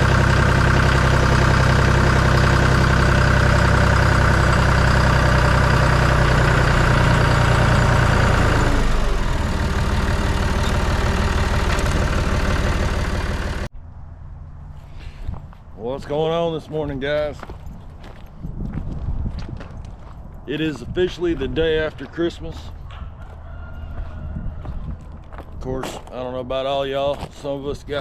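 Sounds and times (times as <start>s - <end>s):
engine running: 0.0s - 16.0s.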